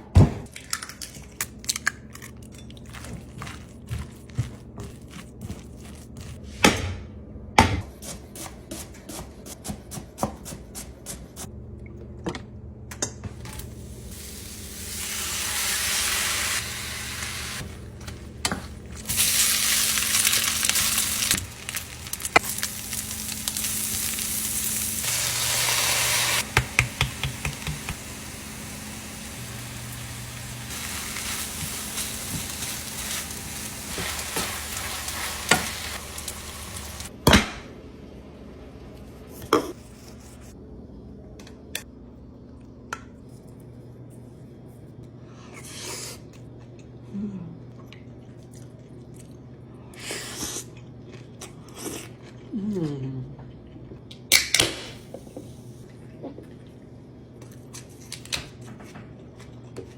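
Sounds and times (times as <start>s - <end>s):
food sizzling in a pan: 13.4s - 37.1s
utensils clicking and knocking: 26.4s - 28.1s.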